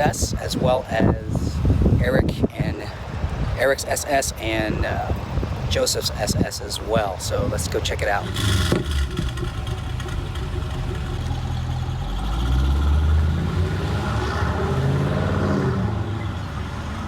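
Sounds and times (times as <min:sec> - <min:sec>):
car engine revving: 0:08.1 - 0:16.2.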